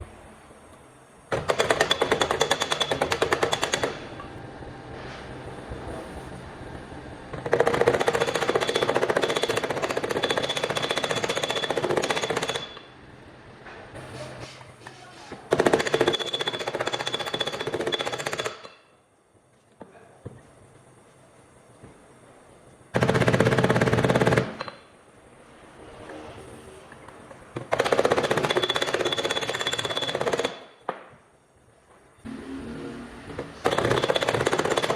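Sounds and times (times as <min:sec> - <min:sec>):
power tool rattling on metal: 0:33.6 - 0:34.9.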